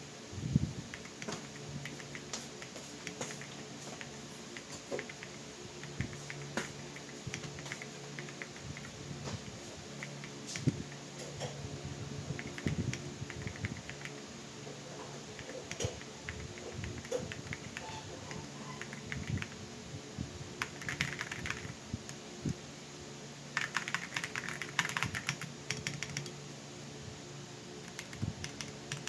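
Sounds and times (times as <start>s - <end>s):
mechanical keyboard typing: 0.9s - 8.9s, 12.4s - 14.1s, 15.4s - 19.6s, 20.6s - 22.2s, 23.6s - 26.4s, 27.8s - 29.0s.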